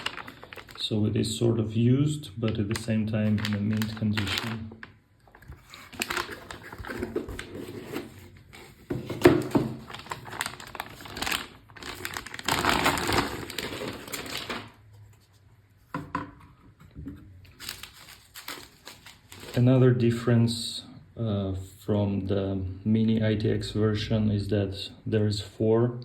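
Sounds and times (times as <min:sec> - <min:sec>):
packaging rustling and crinkling: 0:00.0 - 0:01.0, 0:02.5 - 0:15.4, 0:17.5 - 0:19.7.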